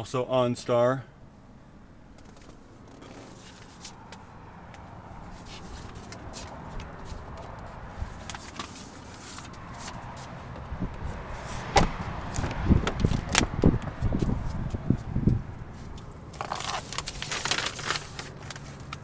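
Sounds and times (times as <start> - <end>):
car door handled: 5.8 - 17.1.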